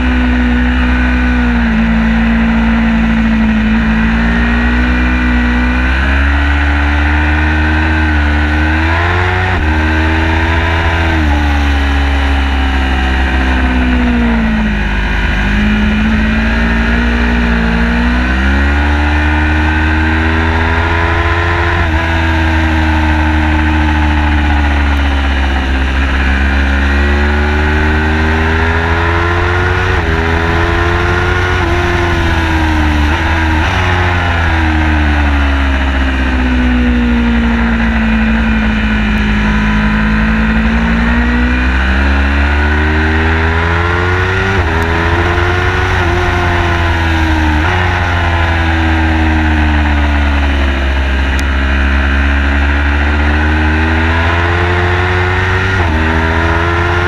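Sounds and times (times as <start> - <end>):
car engine accelerating: 0.0 - 57.0
heavy low rumble: 8.4 - 52.8.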